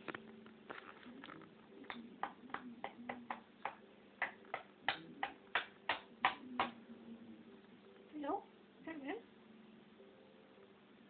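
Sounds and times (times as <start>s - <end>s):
parrot clicking: 1.9s - 6.8s.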